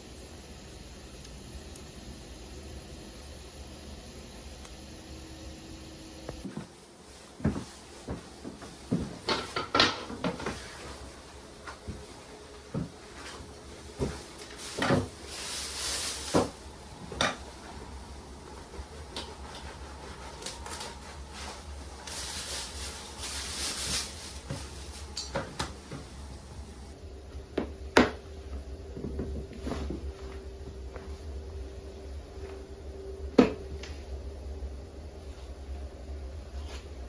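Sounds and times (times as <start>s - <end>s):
objects knocking and clattering: 7.5s - 10.7s
short hissing rustles: 14.2s - 16.7s, 19.6s - 25.2s.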